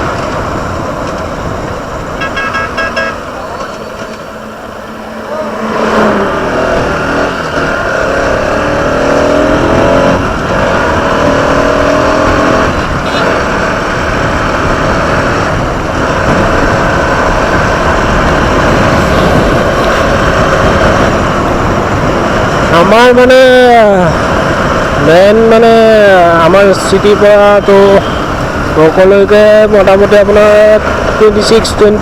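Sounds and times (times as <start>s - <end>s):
motorcycle engine accelerating: 0.0s - 27.4s
wind noise rushing: 4.7s - 25.1s.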